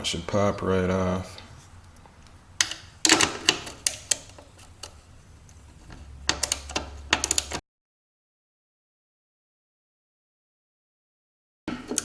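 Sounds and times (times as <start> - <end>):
hand tool clicking on metal nuts: 1.3 - 7.6, 11.7 - 12.0.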